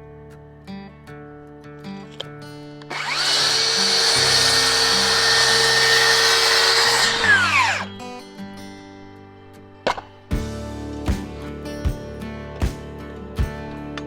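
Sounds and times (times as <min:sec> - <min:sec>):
acoustic guitar music: 0:00.0 - 0:02.9, 0:07.2 - 0:14.0
power tool motor whining: 0:02.9 - 0:08.0.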